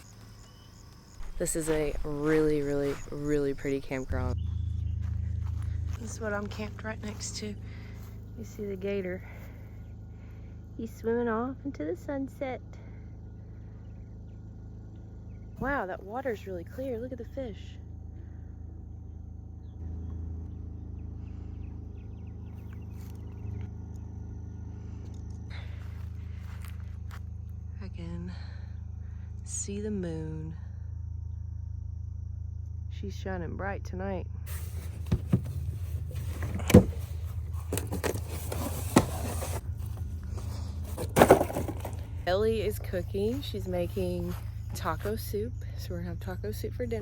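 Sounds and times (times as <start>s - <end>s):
high insect trill: 0.0s - 6.0s
low mechanical hum: 0.0s - 47.0s.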